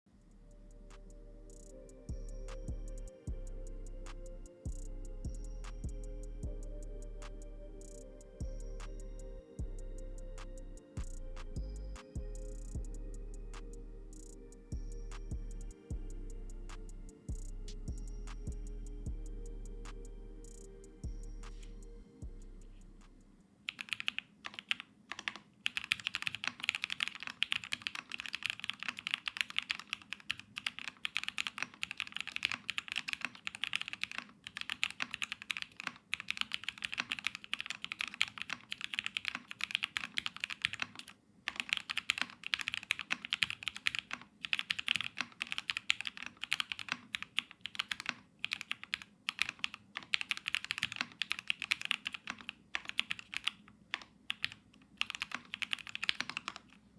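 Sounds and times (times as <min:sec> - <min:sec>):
fast typing on mechanical keyboard: 0:23.7 - 0:56.8.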